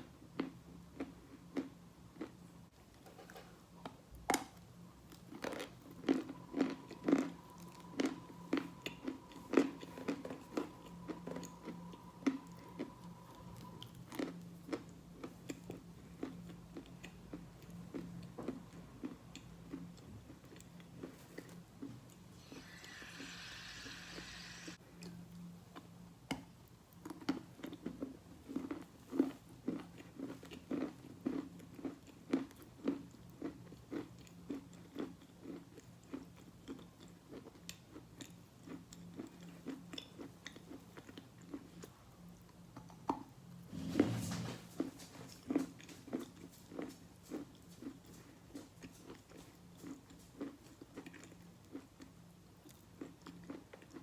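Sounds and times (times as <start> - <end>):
chewing chalk crunches: 5.1 - 23.2.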